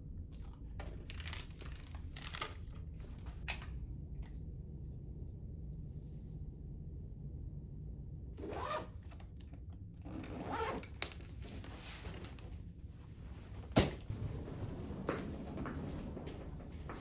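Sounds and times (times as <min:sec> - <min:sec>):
zipper being pulled: 0:08.4 - 0:09.2, 0:10.0 - 0:12.4.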